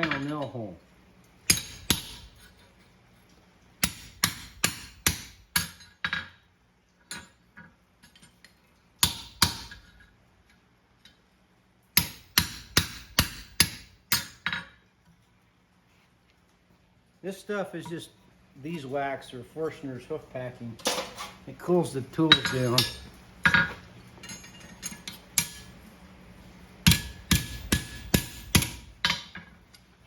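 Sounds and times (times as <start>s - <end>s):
hammer striking metal: 1.5s - 2.4s, 26.8s - 29.3s.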